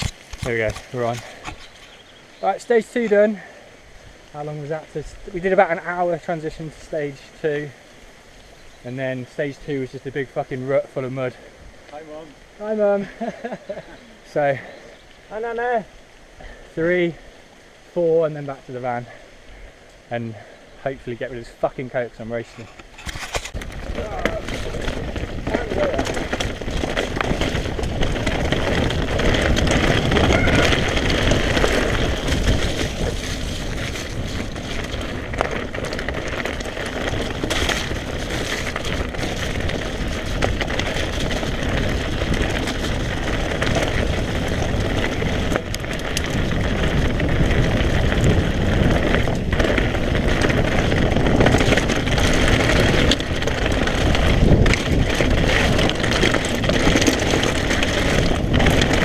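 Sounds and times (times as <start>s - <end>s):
wind on microphone: 0.0s - 2.5s, 22.6s - 59.0s
bike rumble and rustle: 0.0s - 59.0s
bike clicks and knocks: 22.6s - 59.0s.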